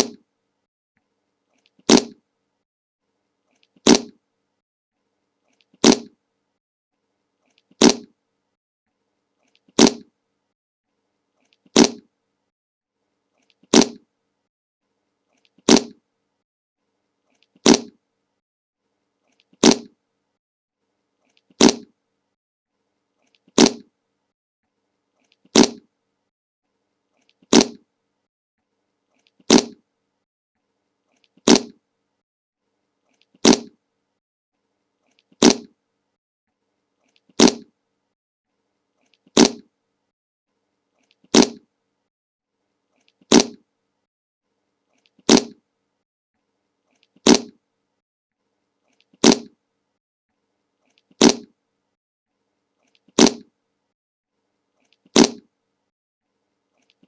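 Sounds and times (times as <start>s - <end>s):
fart sound effect: 0.0s - 0.2s, 1.8s - 2.2s, 3.8s - 4.2s, 5.8s - 6.2s, 7.8s - 8.1s, 9.8s - 10.1s, 11.7s - 12.1s, 13.7s - 14.0s, 15.6s - 16.0s, 17.6s - 18.0s, 19.6s - 20.0s, 21.6s - 21.9s, 23.6s - 23.9s, 25.5s - 25.8s, 27.5s - 27.8s, 29.5s - 29.8s, 31.4s - 31.8s, 33.4s - 33.8s, 35.4s - 35.7s, 37.4s - 37.7s, 39.4s - 39.7s, 41.3s - 41.6s, 43.3s - 43.6s, 45.3s - 45.6s, 47.2s - 47.6s, 49.2s - 49.6s, 51.2s - 51.5s, 53.2s - 53.4s, 55.2s - 55.4s.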